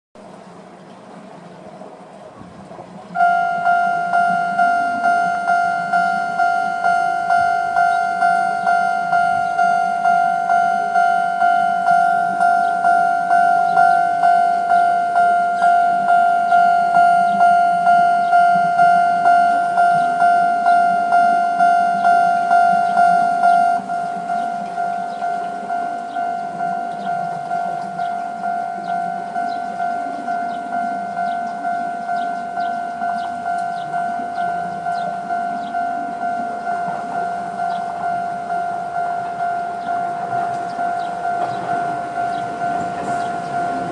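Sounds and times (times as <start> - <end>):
level crossing warning bell: 2.8 - 43.9.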